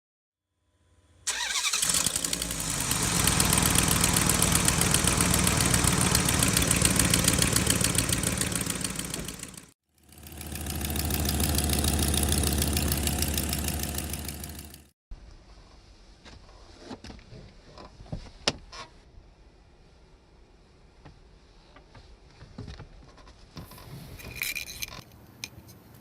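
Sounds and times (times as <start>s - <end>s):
car engine running: 1.3s - 14.9s.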